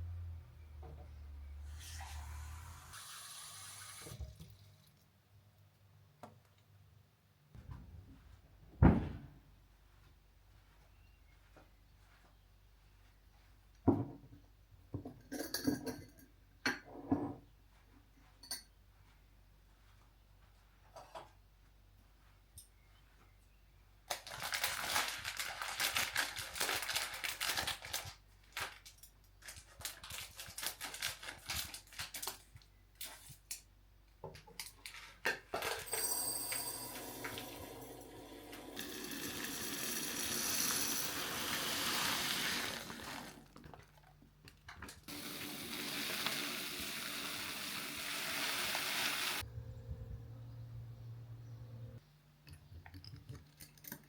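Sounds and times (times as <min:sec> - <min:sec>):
clinks and knocks: 0:15.0 - 0:17.4
running water: 0:36.9 - 0:43.6, 0:45.1 - 0:49.4.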